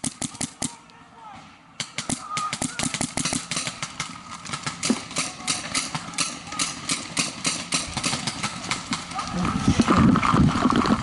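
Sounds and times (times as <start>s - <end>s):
paintball markers firing: 0.0s - 0.8s, 1.8s - 9.0s.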